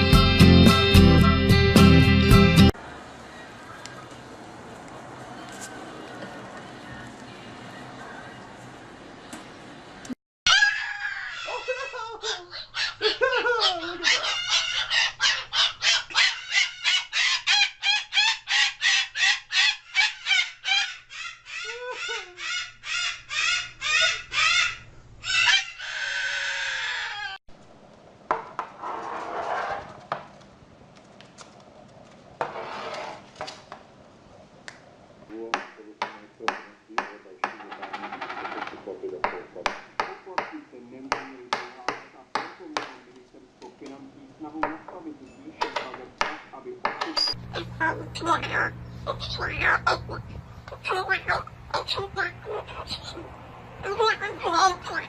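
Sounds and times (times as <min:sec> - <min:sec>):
faint voices: 0:02.8 - 0:09.3
parrot calling and screeching: 0:10.5 - 0:27.4, 0:47.2 - 0:55.0.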